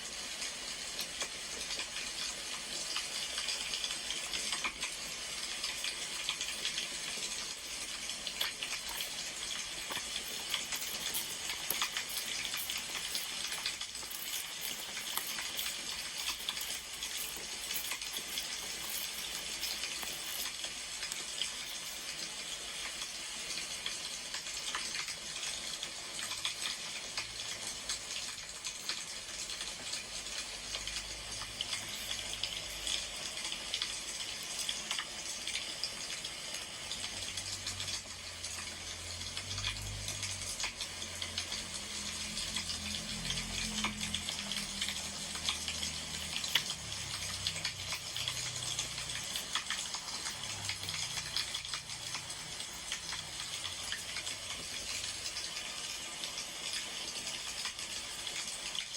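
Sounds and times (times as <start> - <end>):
wood fire crackling: 2.7 - 36.3.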